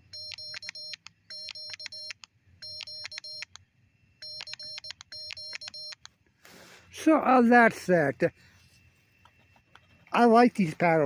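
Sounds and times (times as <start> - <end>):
morse code beeps: 0.0 - 3.6, 4.2 - 6.1.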